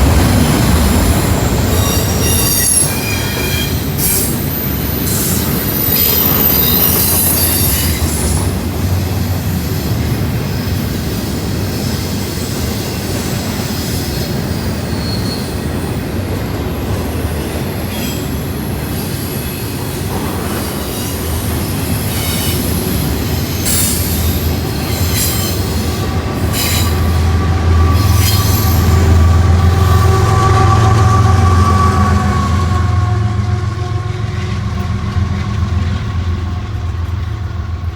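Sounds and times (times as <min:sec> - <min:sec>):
freight train rumbling on rails: 0:00.0 - 0:37.9
wheel squeals: 0:00.2 - 0:10.8, 0:11.7 - 0:16.0, 0:17.3 - 0:32.7.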